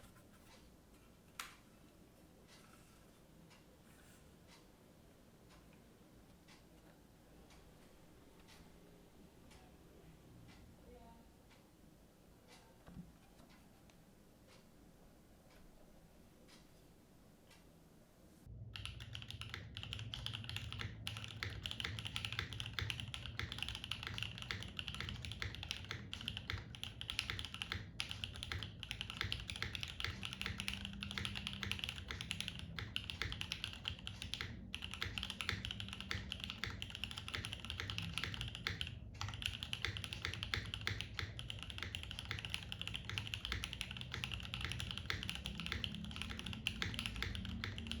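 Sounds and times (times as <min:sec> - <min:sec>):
fast mechanical keyboard typing: 0:18.6 - 0:48.0.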